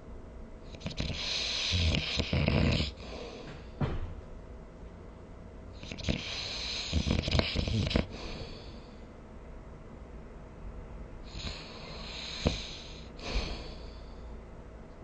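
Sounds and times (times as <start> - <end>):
person snoring: 0.7 - 3.4, 5.8 - 8.9, 11.3 - 14.0.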